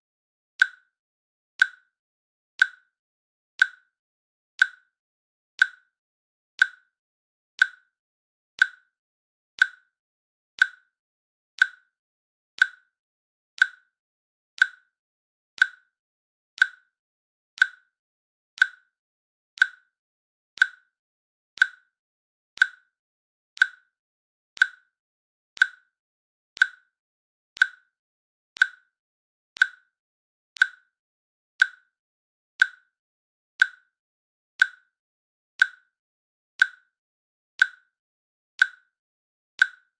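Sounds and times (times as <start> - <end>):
timer clicking: 0.6 - 0.9, 1.6 - 1.9, 2.6 - 2.9, 3.6 - 3.9, 4.6 - 4.9, 5.6 - 5.9, 6.6 - 6.9, 7.6 - 8.0, 8.6 - 9.0, 9.6 - 10.0, 10.6 - 11.0, 11.6 - 12.0, 12.6 - 13.0, 13.6 - 14.0, 14.6 - 15.0, 15.6 - 16.0, 16.6 - 17.0, 17.6 - 18.0, 18.6 - 19.0, 19.6 - 20.0, 20.6 - 21.0, 21.6 - 22.0, 22.6 - 23.0, 23.6 - 24.0, 24.6 - 25.0, 25.6 - 26.0, 26.6 - 27.0, 27.6 - 28.0, 28.6 - 29.0, 29.6 - 30.0, 30.6 - 31.0, 31.6 - 32.0, 32.6 - 33.0, 33.6 - 34.0, 34.6 - 35.0, 35.6 - 36.0, 36.6 - 37.0, 37.6 - 37.9, 38.6 - 39.0, 39.6 - 39.9.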